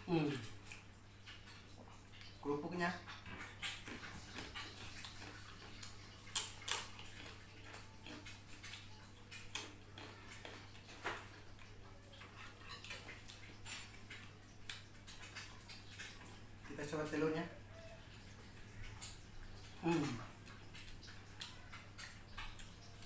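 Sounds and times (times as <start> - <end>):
chewing: 0.2 - 2.4, 3.0 - 23.0
crunching crackers: 3.3 - 16.5.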